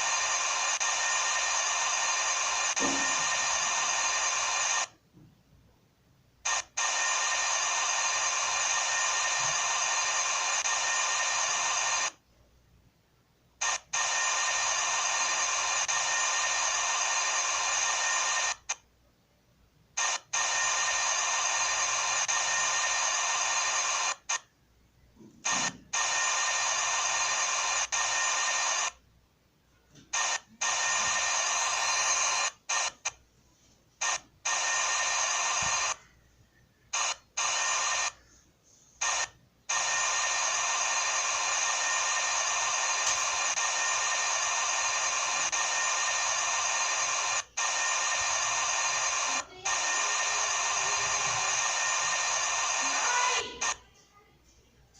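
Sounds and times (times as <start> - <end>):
machine high buzzing whine: 0.0 - 5.0, 6.5 - 12.2, 13.6 - 18.7, 25.4 - 29.0, 30.2 - 33.2, 34.0 - 36.0, 39.0 - 53.7.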